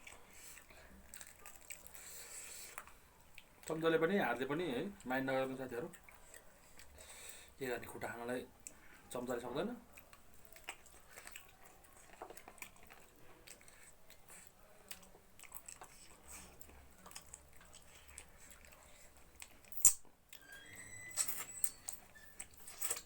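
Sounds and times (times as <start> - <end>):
chewing and biting: 0.0 - 3.8, 5.8 - 7.3, 9.8 - 20.5, 21.2 - 23.0.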